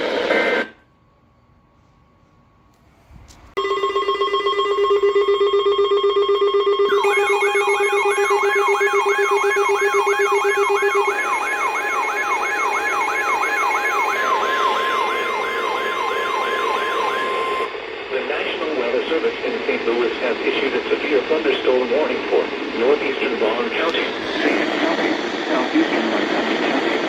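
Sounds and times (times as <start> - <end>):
buzzing alert tone: 3.6 - 17.7
high steady tone: 3.6 - 17.7
siren-like warble: 3.6 - 17.7.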